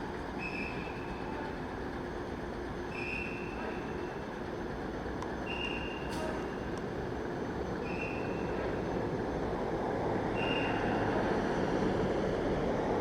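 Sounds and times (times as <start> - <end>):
fire truck engine running: 0.0 - 13.0
reversing alarm beeps: 5.4 - 6.2, 7.8 - 8.6, 10.4 - 11.0.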